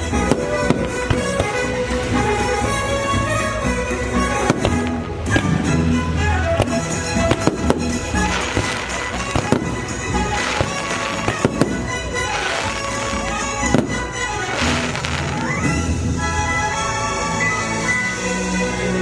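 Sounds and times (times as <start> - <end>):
firework shells bursting: 0.0 - 5.7, 6.6 - 16.0
fireworks crackling: 0.0 - 17.8
music from loudspeakers: 0.0 - 19.0.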